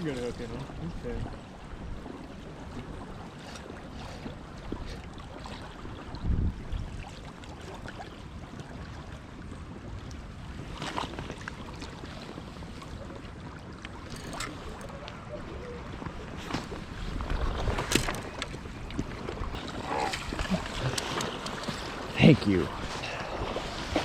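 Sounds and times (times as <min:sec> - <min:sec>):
wind buffeting microphone: 0:00.0 - 0:07.2, 0:08.2 - 0:24.0
river water rushing: 0:17.9 - 0:24.0.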